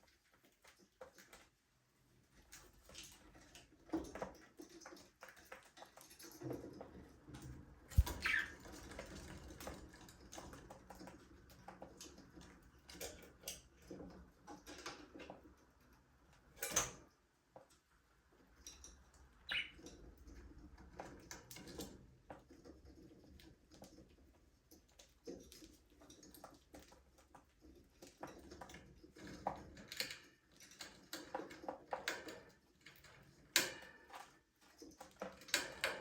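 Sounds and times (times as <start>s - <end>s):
budgerigars chirping: 8.0s - 8.6s, 19.5s - 19.8s.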